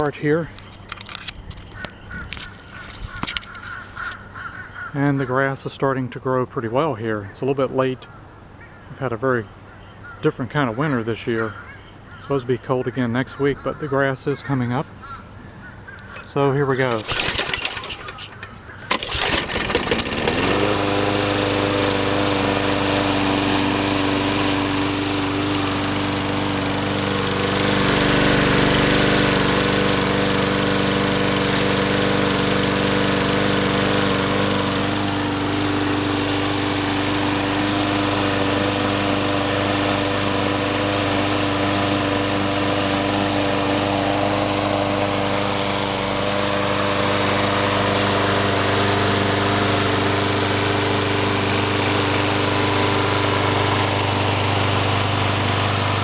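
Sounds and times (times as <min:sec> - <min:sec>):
lawn mower engine running: 0:00.0 - 0:04.1, 0:16.7 - 0:56.0.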